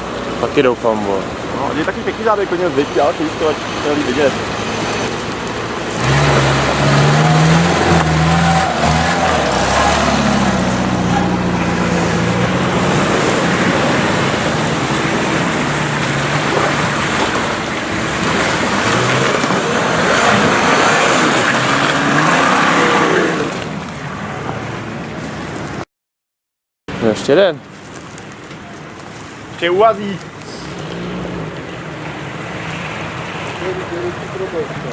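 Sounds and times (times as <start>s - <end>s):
steady rush of noise: 0.0s - 25.8s
engine revving hard: 3.2s - 25.3s, 30.6s - 31.6s.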